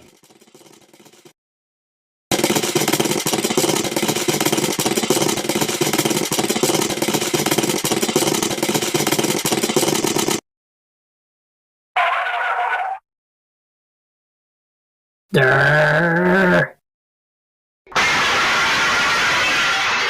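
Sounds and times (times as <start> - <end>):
harsh rattling noise: 0.0 - 1.4, 2.3 - 10.4.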